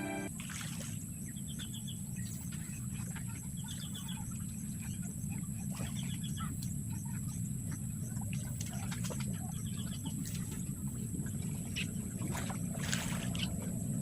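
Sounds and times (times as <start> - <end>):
birds chirping: 0.0 - 0.3
steady low rumble: 11.0 - 14.0.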